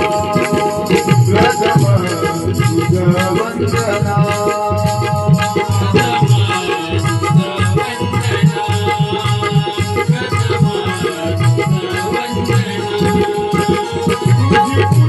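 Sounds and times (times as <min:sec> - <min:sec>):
drum strokes: 0:00.0 - 0:15.0
held melodic notes: 0:00.0 - 0:15.0
jingling percussion: 0:00.0 - 0:15.0.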